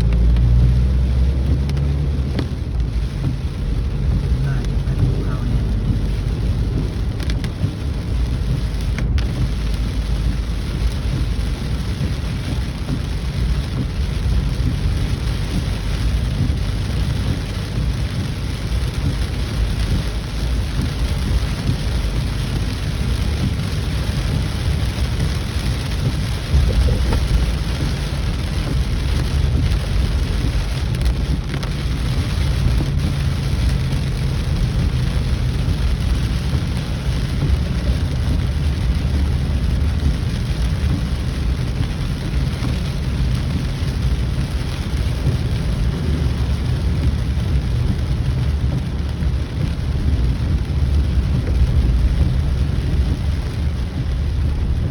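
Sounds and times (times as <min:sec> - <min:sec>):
constant low rumble: 0:00.0 - 0:54.9
heavy rain pouring: 0:00.0 - 0:54.9.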